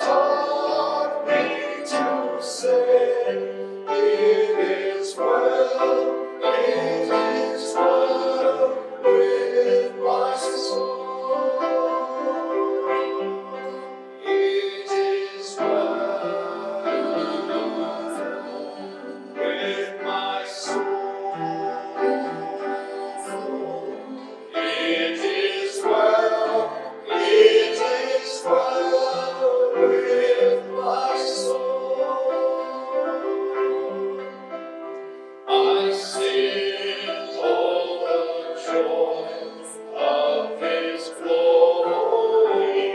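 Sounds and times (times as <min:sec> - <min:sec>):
instrumental accompaniment: 0:00.0 - 0:42.9
voices singing worship song: 0:00.0 - 0:42.9.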